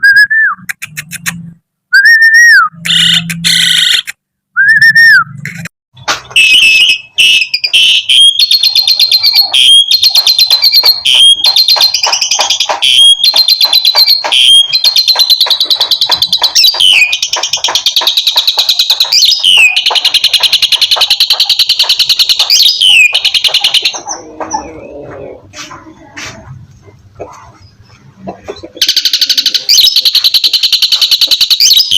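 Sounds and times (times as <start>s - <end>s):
starling chattering calls: 28.7s - 31.9s.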